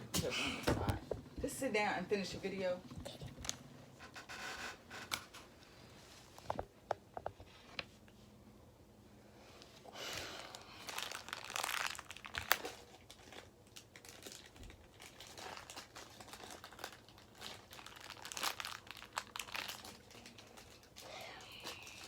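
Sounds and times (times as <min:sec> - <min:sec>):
plastic packaging crinkling: 0:10.2 - 0:22.0.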